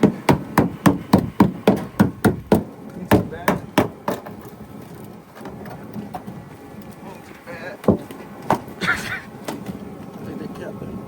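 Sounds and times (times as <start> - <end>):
hammer blows: 0.0 - 4.3.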